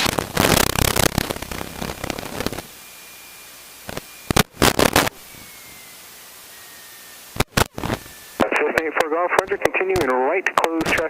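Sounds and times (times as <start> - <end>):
radio static crackling: 0.0 - 11.0
faint high whistle: 5.2 - 7.3.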